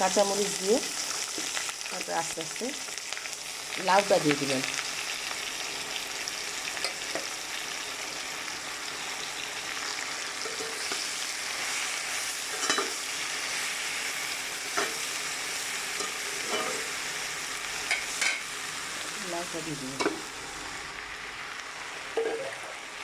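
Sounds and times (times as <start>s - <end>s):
fish frying in oil: 0.0s - 23.0s
utensil scraping a pan: 16.0s - 17.0s.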